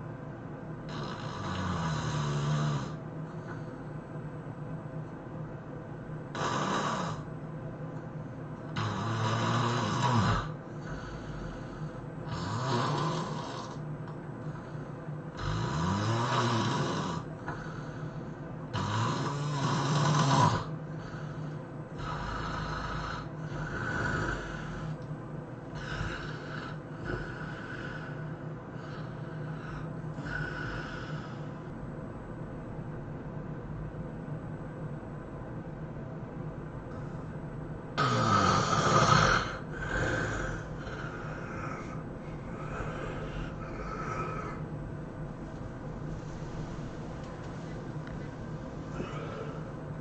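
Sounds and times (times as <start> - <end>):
person snoring: 0.9 - 3.6, 6.3 - 7.3, 8.7 - 13.8, 14.5 - 18.1, 18.7 - 25.0, 25.7 - 31.7, 38.0 - 44.7, 48.7 - 49.8.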